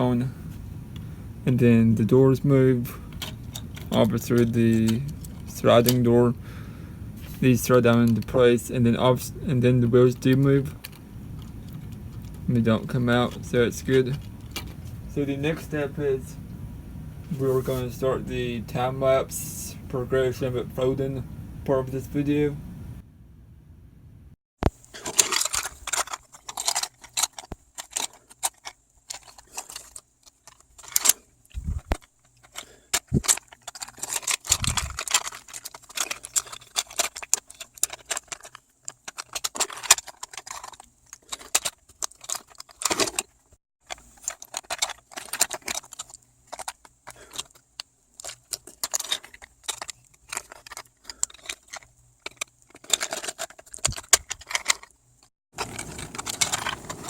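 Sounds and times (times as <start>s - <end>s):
plastic parts clicking and rattling: 1.9s - 6.6s, 7.2s - 15.8s, 24.6s - 57.0s.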